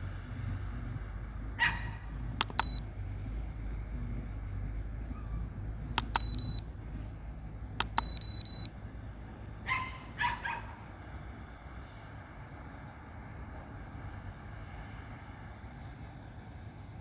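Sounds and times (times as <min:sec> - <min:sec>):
low background rumble: 0:00.0 - 0:09.6
dog barking: 0:01.6 - 0:02.0, 0:09.7 - 0:10.8
click: 0:02.4 - 0:02.8, 0:06.0 - 0:06.6, 0:07.8 - 0:08.7
high electronic beeping: 0:02.4 - 0:02.8, 0:06.0 - 0:06.6, 0:07.8 - 0:08.7.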